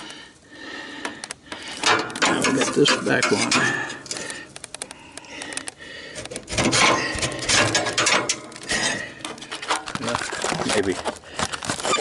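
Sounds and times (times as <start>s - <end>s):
pry bar scraping metal: 1.8s - 4.3s, 6.2s - 10.0s.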